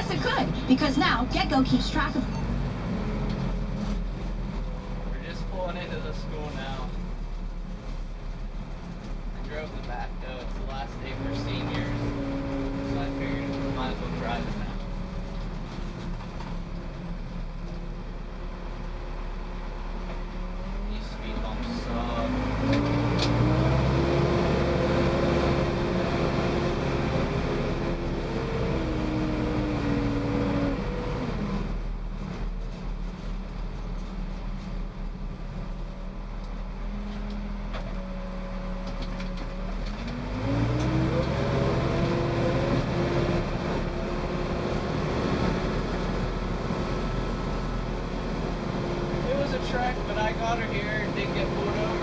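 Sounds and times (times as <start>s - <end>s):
diesel engine of backhoe driving: 0.0s - 52.0s.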